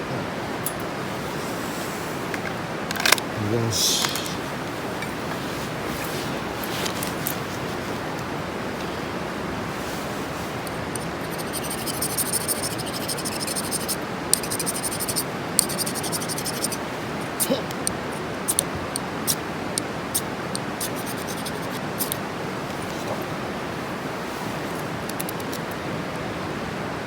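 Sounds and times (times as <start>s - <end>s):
steady hiss: 3.3s - 22.7s.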